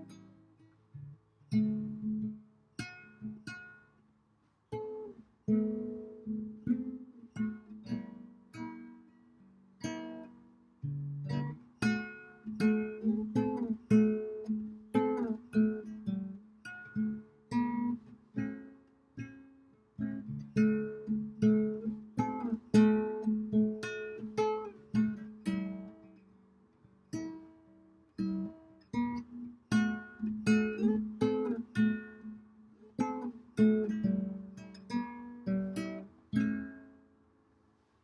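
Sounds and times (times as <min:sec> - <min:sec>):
acoustic guitar strumming chords: 0:00.0 - 0:04.0, 0:04.7 - 0:26.4, 0:27.1 - 0:37.2.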